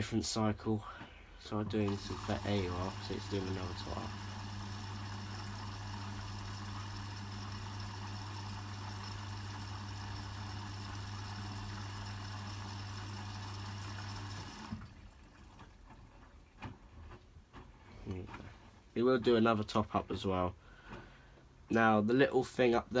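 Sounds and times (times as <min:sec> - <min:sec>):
washing machine inlet valve humming: 0:01.4 - 0:15.2
water running into drum: 0:01.5 - 0:17.7.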